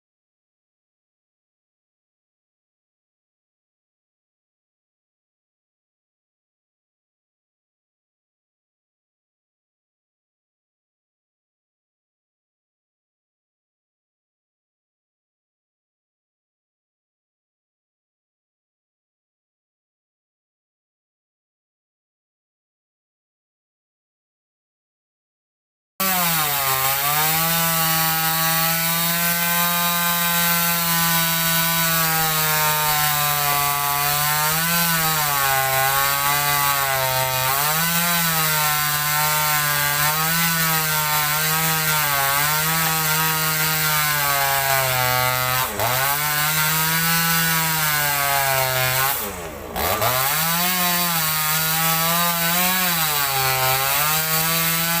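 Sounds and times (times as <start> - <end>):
chainsaw cutting wood: 26.0 - 55.0.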